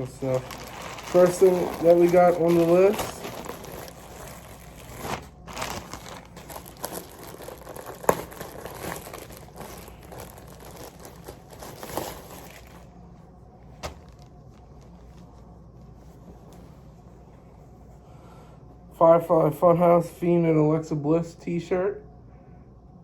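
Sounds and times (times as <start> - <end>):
packaging crinkling and rustling: 0.0 - 12.9, 13.8 - 15.5.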